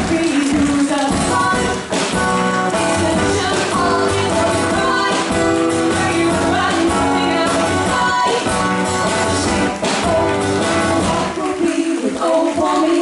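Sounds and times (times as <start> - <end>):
person singing: 0.0 - 13.0
guitar playing: 1.5 - 11.4.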